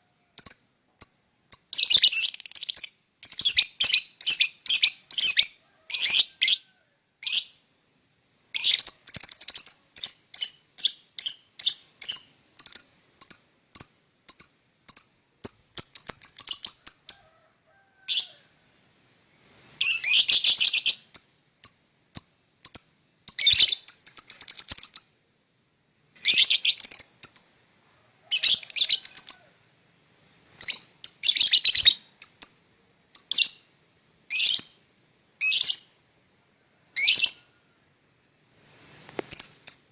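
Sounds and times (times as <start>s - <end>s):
lovebird chirping: 0.0s - 7.6s, 8.5s - 17.3s, 19.7s - 25.2s, 26.2s - 27.6s, 28.2s - 29.6s, 30.5s - 33.7s, 34.3s - 36.0s, 36.8s - 37.6s, 39.2s - 39.9s.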